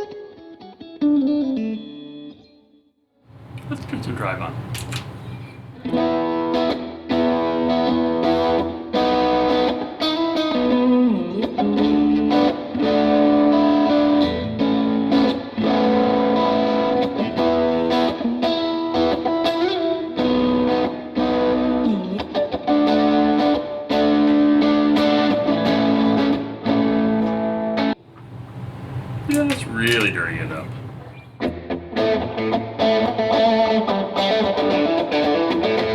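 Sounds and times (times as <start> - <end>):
electric guitar strummed chords: 5.8 - 27.6.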